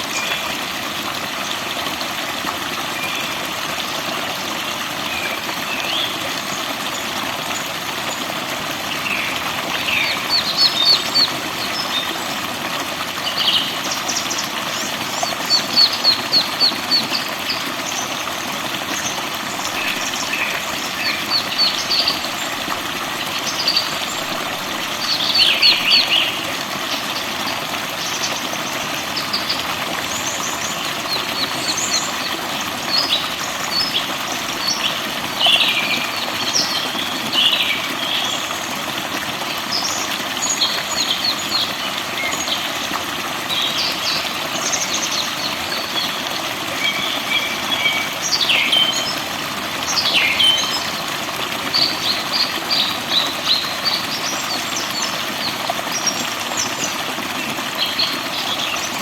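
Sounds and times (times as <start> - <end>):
running water: 0.0 - 59.0
forest birds chirping and singing: 46.8 - 49.2.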